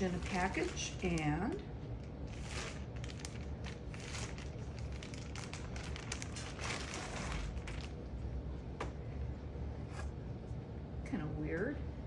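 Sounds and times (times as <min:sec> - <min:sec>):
packaging crinkling: 0:00.0 - 0:01.3, 0:01.9 - 0:08.2.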